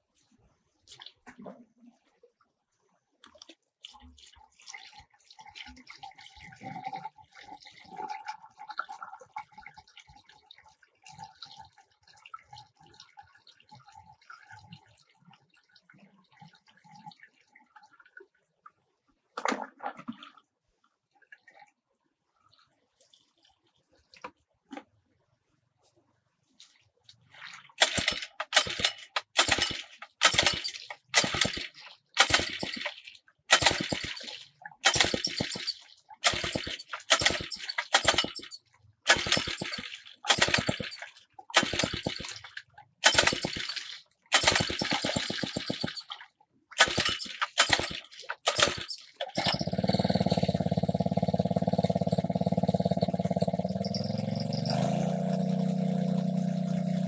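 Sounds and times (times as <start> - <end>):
small engine running: 27.8 - 32.9, 33.5 - 41.0, 41.6 - 42.4, 43.0 - 46.1, 46.8 - 57.0
small engine cranking: 27.8 - 46.1, 46.8 - 57.0.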